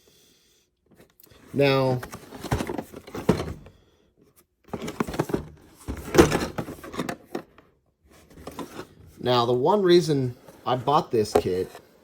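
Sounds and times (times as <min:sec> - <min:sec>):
plastic parts knocking and rattling: 0:01.9 - 0:03.7, 0:04.7 - 0:07.7.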